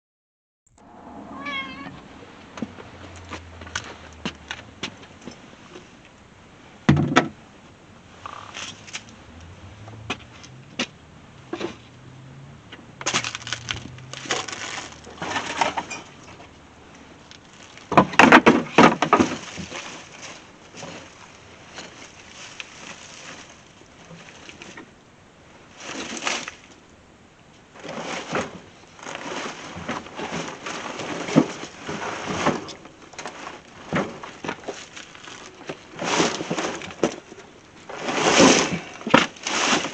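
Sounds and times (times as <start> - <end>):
objects knocking and scraping: 8.5 - 11.9, 13.0 - 16.5.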